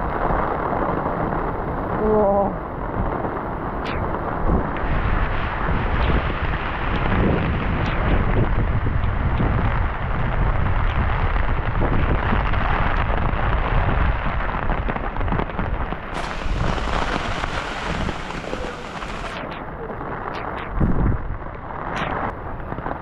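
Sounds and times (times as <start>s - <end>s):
wind buffeting microphone: 0.0s - 21.4s
heavy rain hissing: 15.8s - 20.9s.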